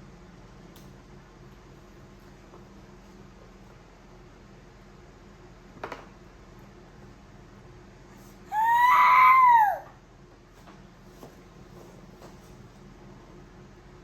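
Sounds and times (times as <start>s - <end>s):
baby squealing: 8.5s - 9.9s.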